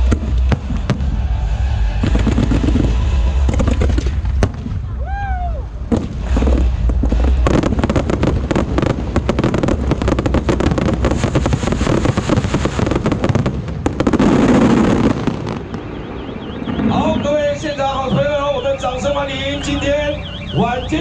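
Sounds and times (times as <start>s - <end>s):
deep firework boom: 0.0s - 20.7s
fireworks cracks and pops: 2.0s - 4.9s, 5.9s - 15.8s.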